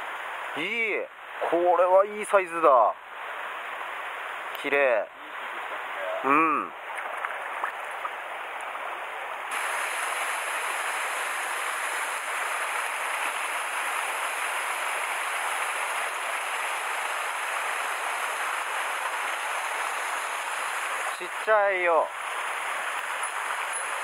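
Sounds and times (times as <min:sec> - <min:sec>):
stream water rushing: 0:00.0 - 0:24.0.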